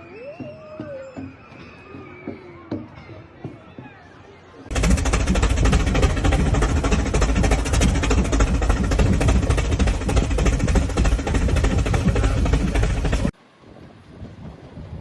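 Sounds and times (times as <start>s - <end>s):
engine running loudly: 4.7s - 13.3s.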